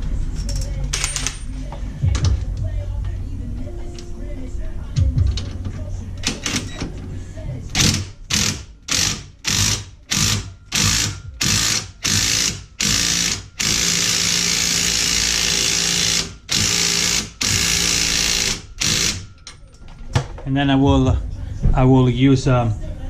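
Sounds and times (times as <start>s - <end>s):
impact wrench running: 7.8s - 19.3s.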